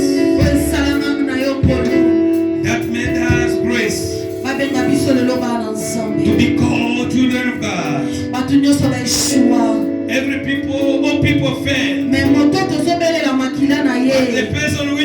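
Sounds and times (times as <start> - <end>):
sustained held chords: 0.0 - 13.0
person singing: 0.0 - 15.0.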